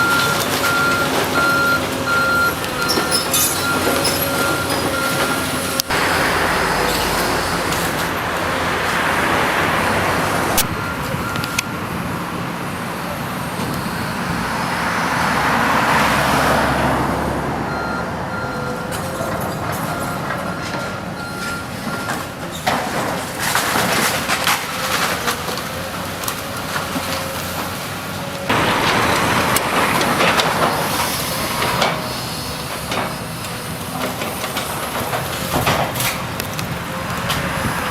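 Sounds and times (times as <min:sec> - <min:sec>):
diesel engine running low: 0:00.0 - 0:37.9
debris cracking and knocking: 0:22.6 - 0:27.3, 0:28.5 - 0:32.0.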